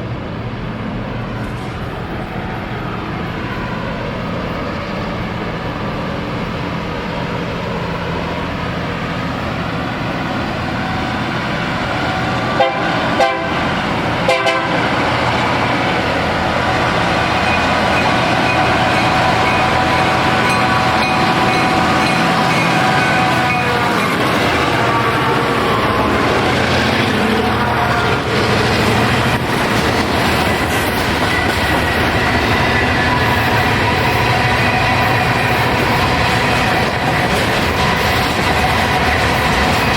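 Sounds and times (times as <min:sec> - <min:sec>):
train rumbling: 0:00.0 - 0:39.9
train horn chord: 0:12.5 - 0:13.6, 0:14.2 - 0:14.9, 0:20.5 - 0:25.8.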